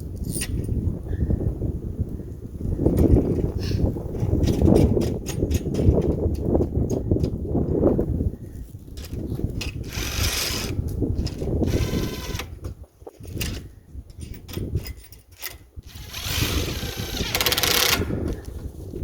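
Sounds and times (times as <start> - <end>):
cordless power tool whirring: 9.0 - 12.6, 15.8 - 18.4.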